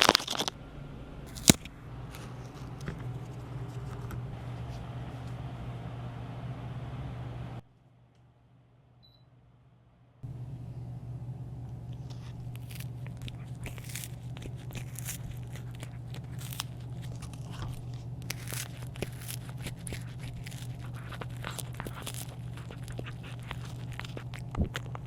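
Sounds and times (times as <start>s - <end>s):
cat crunching food: 0.0s - 0.6s, 1.3s - 4.4s, 11.7s - 25.0s
steady low hum: 0.0s - 25.0s.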